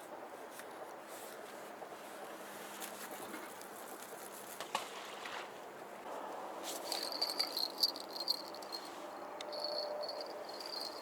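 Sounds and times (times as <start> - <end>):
low outdoor hiss: 0.0 - 11.0
cricket chirping trill: 9.5 - 11.0.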